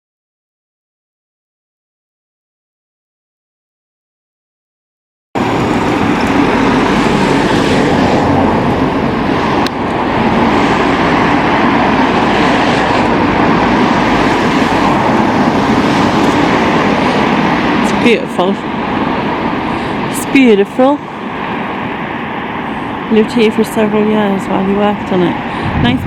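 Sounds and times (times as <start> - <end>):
loud steady rushing rumble: 5.4 - 26.0.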